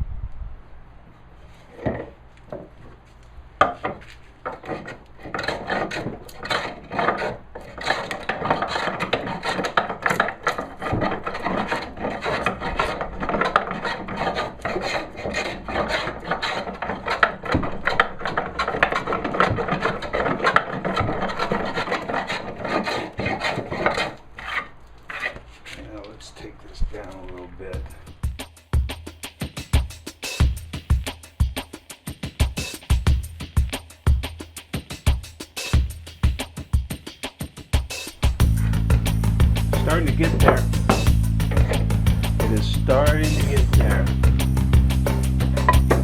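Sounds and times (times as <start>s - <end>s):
hand plane shaving wood: 3.7s - 27.4s, 38.1s - 46.0s.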